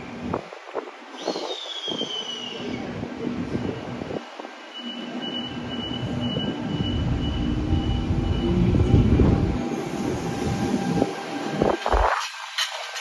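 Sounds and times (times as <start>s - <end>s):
train rumbling past: 5.5s - 13.0s.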